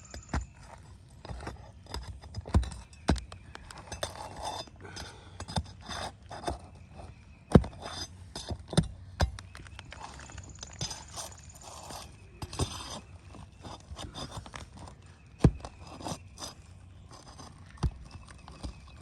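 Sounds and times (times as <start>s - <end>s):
hand tools tapping on shingles: 0.1s - 6.7s.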